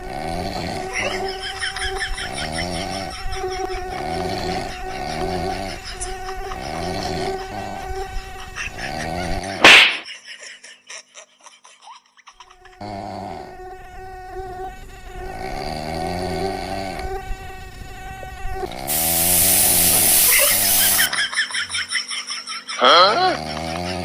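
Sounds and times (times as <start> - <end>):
snoring: 0.0 - 1.2, 3.9 - 5.8, 6.6 - 7.8, 12.8 - 13.6, 15.3 - 17.2, 22.9 - 24.0
mosquito buzzing whine: 0.0 - 9.6, 12.5 - 21.1
loud hiss: 18.8 - 21.2.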